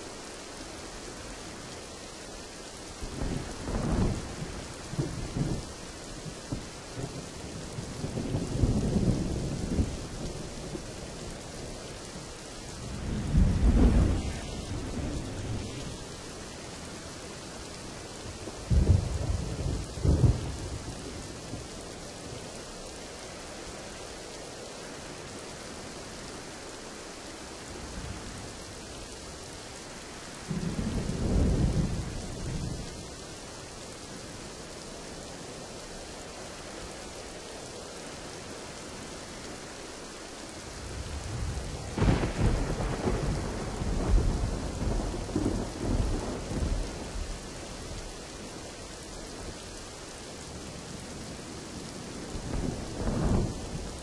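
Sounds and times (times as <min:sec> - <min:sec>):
steady rain falling: 0:00.0 - 0:54.0
thunder cracking and rumbling: 0:12.8 - 0:15.9, 0:40.8 - 0:47.4, 0:52.3 - 0:54.0.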